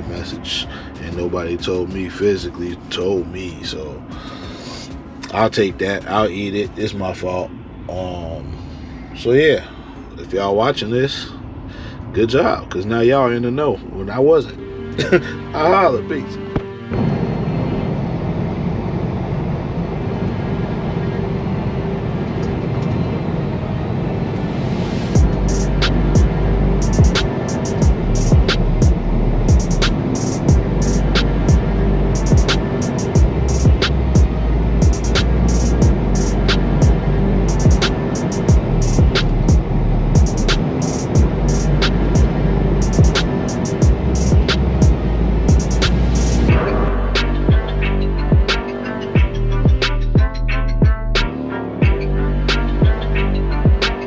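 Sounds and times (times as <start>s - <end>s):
background music with steady beat: 0.0s - 7.5s, 14.2s - 18.0s, 24.6s - 54.0s
road and tire noise: 0.0s - 54.0s
truck engine drone: 0.0s - 54.0s
deep bass kicks sliding down: 25.2s - 32.6s, 33.2s - 37.9s, 38.5s - 40.6s, 41.2s - 48.6s, 49.2s - 53.9s
ticking hi-hats: 25.2s - 54.0s.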